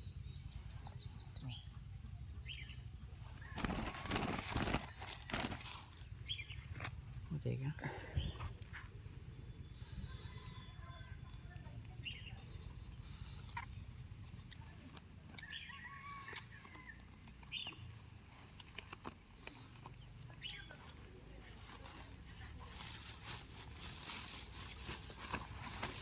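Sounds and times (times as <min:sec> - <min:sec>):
birds chirping: 0:00.0 - 0:26.0
rustling and scraping: 0:03.1 - 0:07.2, 0:12.6 - 0:26.0.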